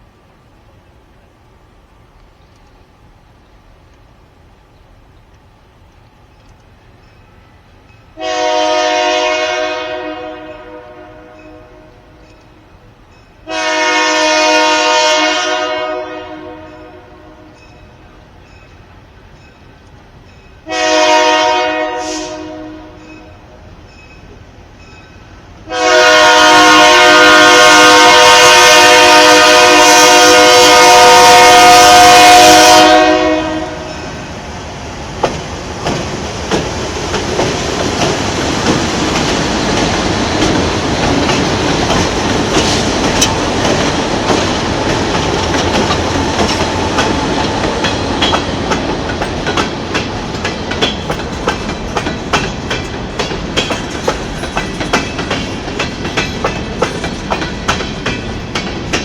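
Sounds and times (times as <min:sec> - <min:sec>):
train rumbling past: 0:00.0 - 0:59.0
locomotive air horn: 0:08.2 - 0:12.2, 0:13.4 - 0:17.6, 0:20.6 - 0:23.6, 0:25.6 - 0:34.1
wheels clacking over rail joints: 0:33.7 - 0:59.0.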